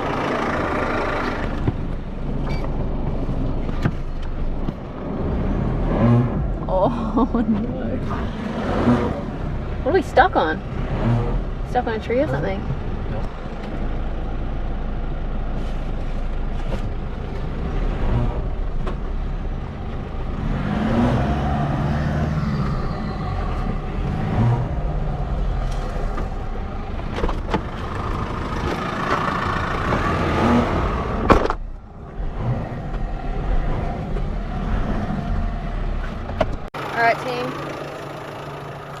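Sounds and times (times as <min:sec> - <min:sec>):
engine revving under load: 0:00.0 - 0:02.0, 0:03.6 - 0:13.6, 0:16.6 - 0:39.0
wheels rushing in mud: 0:19.9 - 0:39.0.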